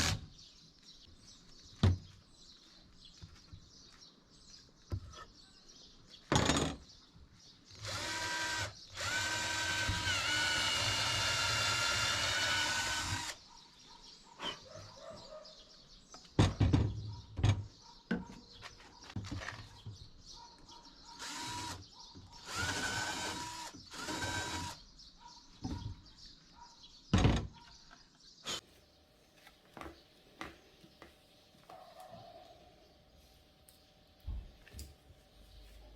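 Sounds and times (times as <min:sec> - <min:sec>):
electric power tool whining: 0:07.8 - 0:13.4, 0:21.2 - 0:21.8, 0:22.4 - 0:24.8.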